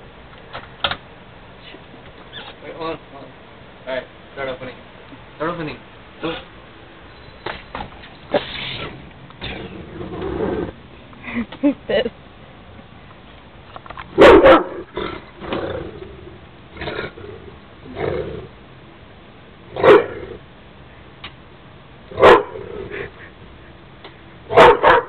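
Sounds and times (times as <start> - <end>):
dog barking: 14.2 - 14.8, 19.8 - 20.2, 22.2 - 22.6, 24.5 - 25.0.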